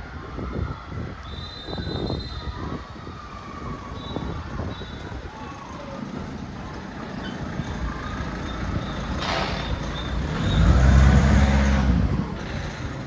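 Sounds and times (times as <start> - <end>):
heavy vehicle engine passing: 7.4 - 13.0.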